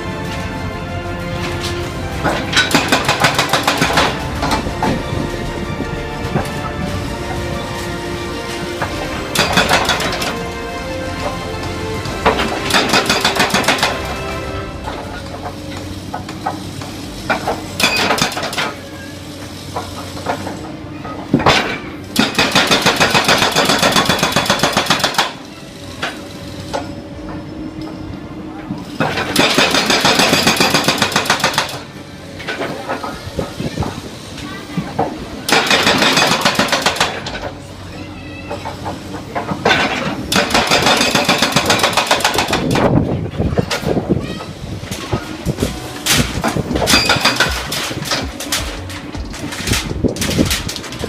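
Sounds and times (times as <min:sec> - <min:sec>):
diesel engine running: 0:00.0 - 0:51.0
hydraulic hammer striking: 0:02.2 - 0:05.3, 0:08.8 - 0:10.5, 0:11.6 - 0:18.8, 0:21.3 - 0:25.4, 0:29.0 - 0:34.0, 0:35.0 - 0:37.5, 0:38.6 - 0:42.9, 0:45.0 - 0:50.7.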